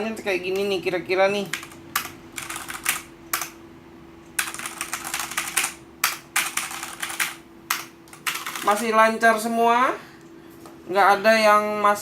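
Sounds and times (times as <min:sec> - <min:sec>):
mechanical keyboard typing: 0:01.4 - 0:03.6, 0:04.4 - 0:09.0.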